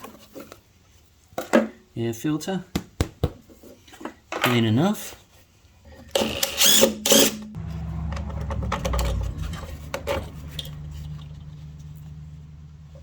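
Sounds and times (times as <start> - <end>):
knocks and clatter of parts: 7.6 - 12.2
low mechanical hum: 7.6 - 13.0.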